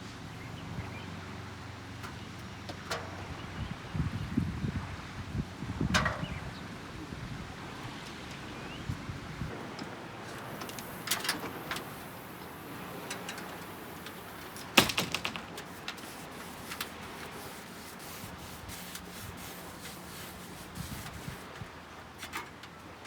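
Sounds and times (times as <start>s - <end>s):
knocks and clicks: 10.4s - 17.0s.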